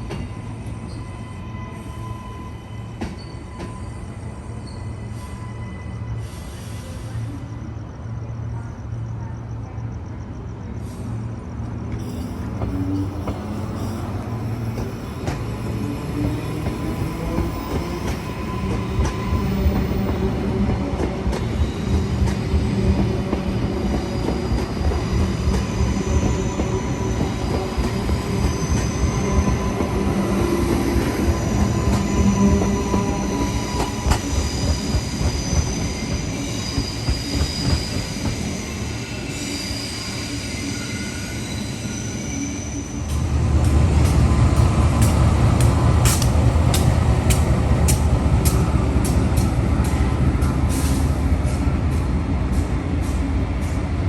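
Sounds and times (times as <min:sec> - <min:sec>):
electric train rumble: 0:00.0 - 0:54.0
wheel squeal on rails: 0:00.2 - 0:07.2, 0:24.1 - 0:43.2.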